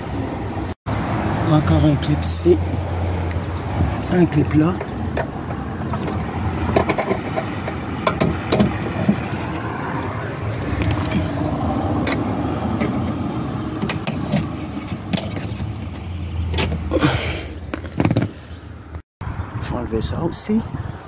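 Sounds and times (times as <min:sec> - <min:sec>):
plastic panel scraping: 0:04.8 - 0:13.2, 0:13.8 - 0:16.9.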